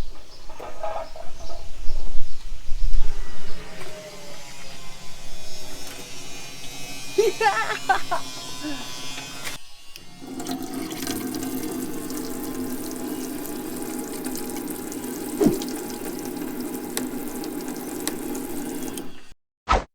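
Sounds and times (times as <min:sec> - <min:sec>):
tap water running into sink: 0:10.1 - 0:19.3.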